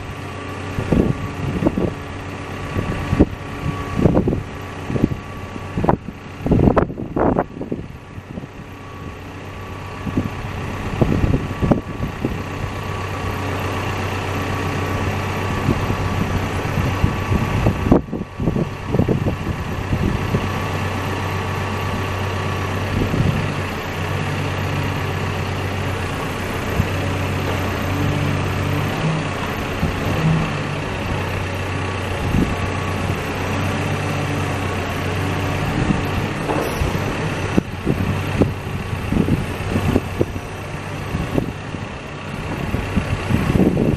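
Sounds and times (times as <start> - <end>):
diesel engine running: 0.0 - 43.9
higher hydraulic tone: 36.4 - 37.7.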